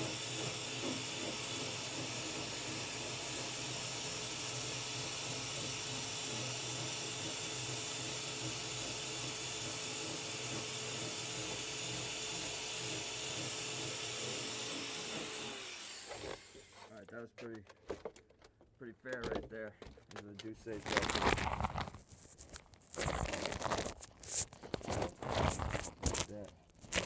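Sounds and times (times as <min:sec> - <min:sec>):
wire wheel grinding with whine: 0:00.0 - 0:16.9.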